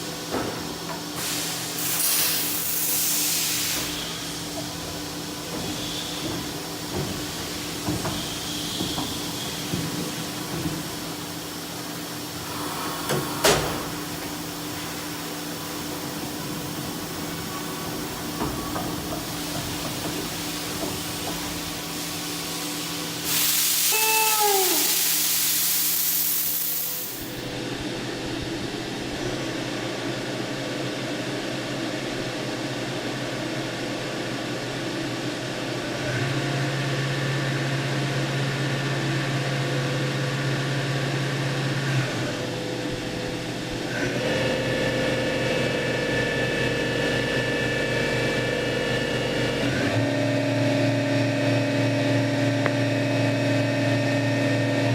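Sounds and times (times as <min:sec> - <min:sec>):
machine hum and whine: 0:00.0 - 0:23.3, 0:27.0 - 0:54.9
air hiss: 0:01.2 - 0:04.5, 0:12.4 - 0:14.1, 0:18.6 - 0:27.4.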